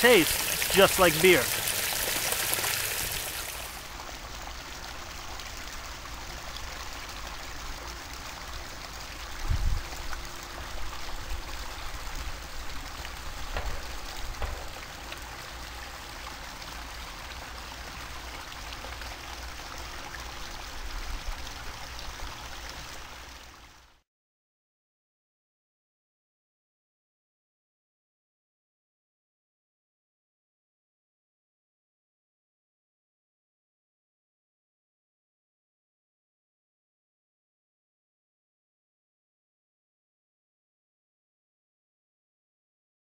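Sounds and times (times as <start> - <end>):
waterfall splashing and trickling: 0.0 - 24.0.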